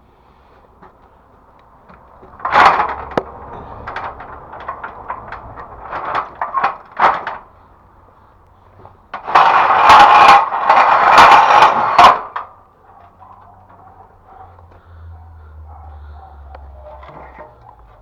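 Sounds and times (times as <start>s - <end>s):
hard parts knocking and clattering: 1.8s - 7.9s, 8.7s - 14.8s
loud rattling and scraping: 1.8s - 7.9s, 8.7s - 18.0s.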